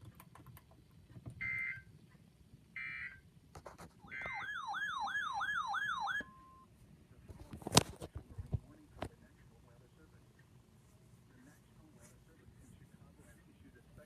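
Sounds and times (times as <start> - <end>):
electronic warbling siren tone: 4.1 - 6.4.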